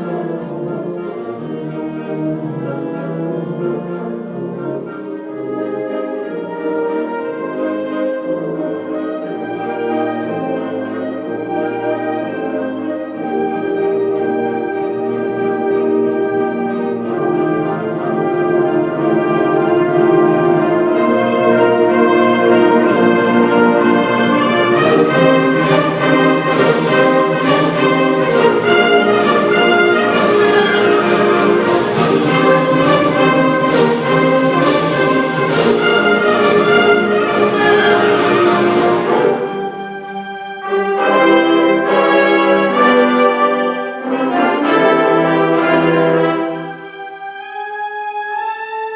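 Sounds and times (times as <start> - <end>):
orchestral brass music: 0.0 - 48.9.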